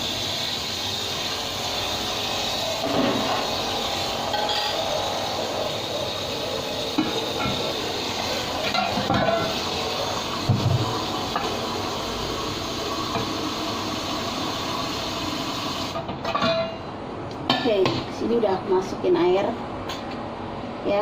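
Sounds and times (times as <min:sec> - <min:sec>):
tap water running: 0:00.0 - 0:16.0
kitchenware knocks and clinks: 0:16.1 - 0:16.8.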